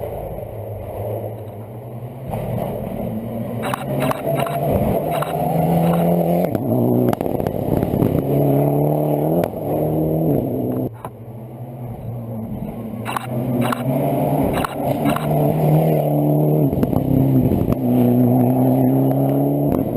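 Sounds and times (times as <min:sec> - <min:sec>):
rally car engine accelerating: 0:00.0 - 0:19.9
sharp cracks: 0:03.6 - 0:06.2.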